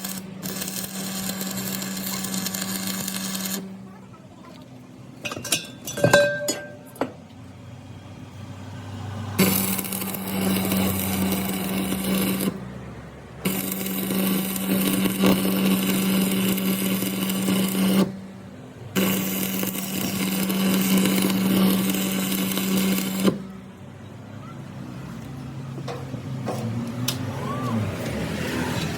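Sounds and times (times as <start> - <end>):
electric workshop tool running: 0.0 - 3.7, 9.4 - 12.6, 13.4 - 18.2, 19.0 - 23.4.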